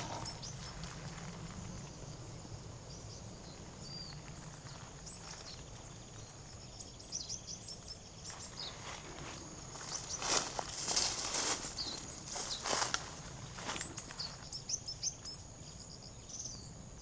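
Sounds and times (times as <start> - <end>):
small birds chirping: 0.0 - 16.8.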